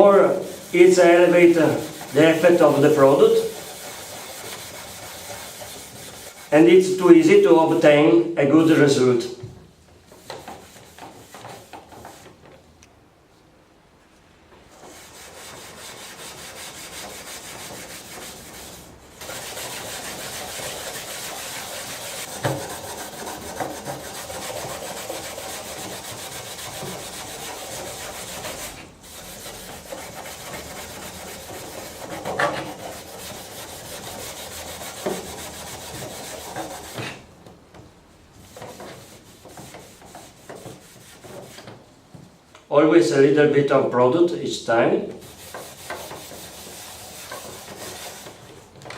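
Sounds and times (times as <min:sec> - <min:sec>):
sponge scrubbing plastic: 0:00.0 - 0:07.8, 0:14.7 - 0:37.3, 0:38.4 - 0:41.8, 0:45.2 - 0:48.8.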